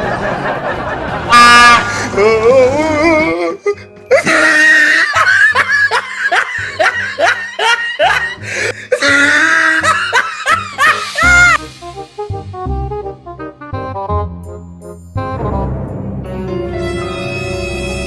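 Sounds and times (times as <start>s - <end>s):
background music with steady beat: 0.0s - 4.5s, 5.2s - 18.0s
person laughing: 0.0s - 11.6s.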